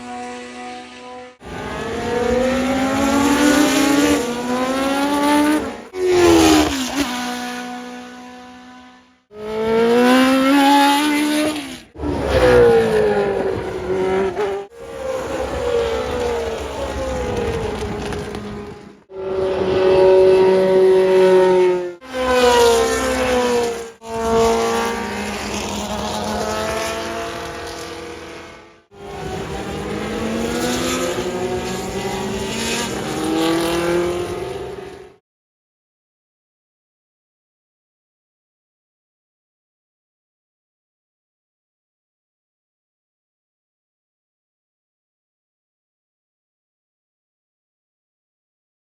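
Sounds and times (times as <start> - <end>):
racing car engines passing: 0.0 - 35.2.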